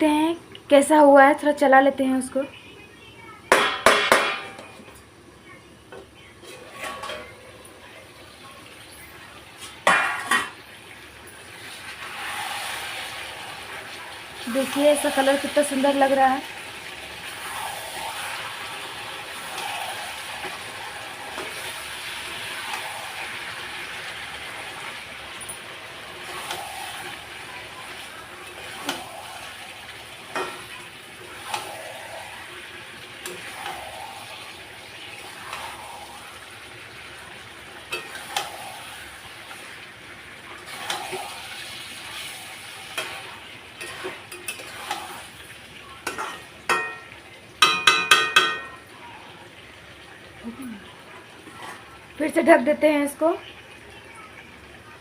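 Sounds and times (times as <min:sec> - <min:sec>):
curry sizzling in pan: 0:07.6 - 0:55.0
spatula scraping pan: 0:17.2 - 0:25.2, 0:26.0 - 0:36.5, 0:37.9 - 0:39.8, 0:40.6 - 0:45.4, 0:46.0 - 0:47.1, 0:51.4 - 0:52.0
utensil clinking on pan: 0:46.1 - 0:48.8.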